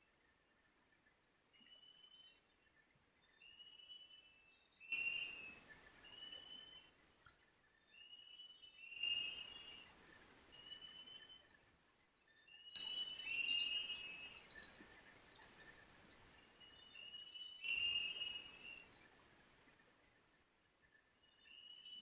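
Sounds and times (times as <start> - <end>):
faint insect drone: 0.0 - 22.0
birds whistling: 8.8 - 11.7, 12.6 - 19.0.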